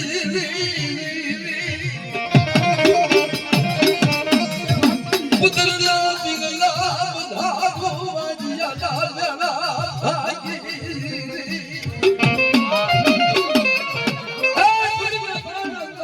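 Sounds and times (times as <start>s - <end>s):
instrumental accompaniment: 0.0s - 16.0s
quick drum strokes: 2.2s - 8.2s, 10.8s - 15.7s.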